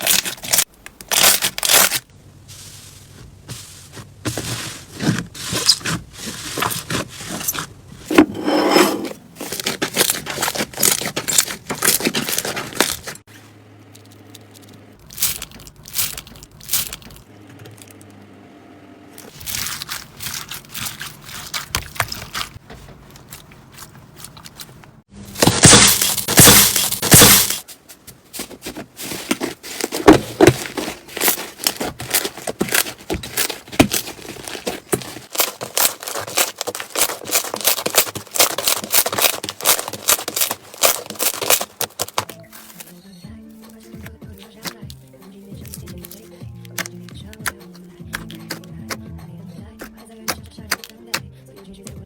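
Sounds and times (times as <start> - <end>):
slime crackling and popping: 31.2 - 42.2.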